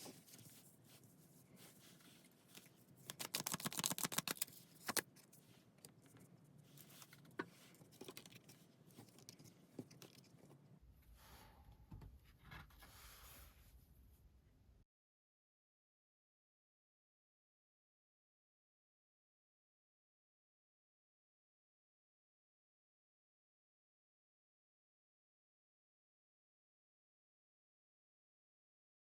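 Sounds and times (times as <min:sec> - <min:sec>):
cards being shuffled: 0:02.1 - 0:05.3.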